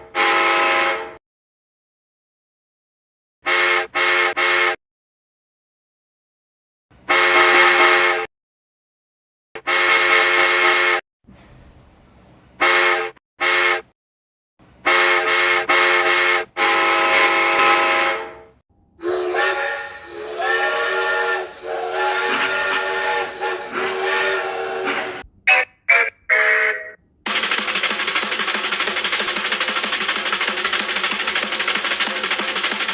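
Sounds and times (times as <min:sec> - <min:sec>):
cartoon steam train whistle: 0:00.0 - 0:01.2, 0:03.5 - 0:04.8, 0:07.1 - 0:08.3, 0:09.6 - 0:11.0, 0:12.6 - 0:13.9, 0:14.9 - 0:27.5.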